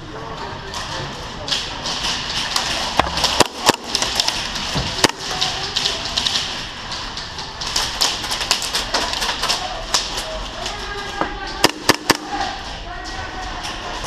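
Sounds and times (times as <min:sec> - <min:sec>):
airsoft gun shots: 0:11.6 - 0:12.5.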